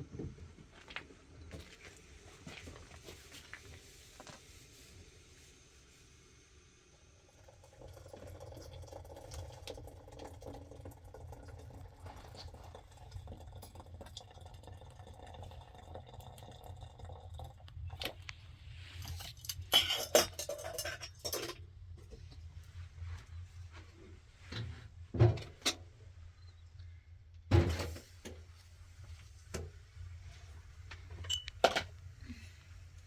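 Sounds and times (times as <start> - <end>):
small knocks and clinks: 19.1 - 21.6, 31.2 - 31.9.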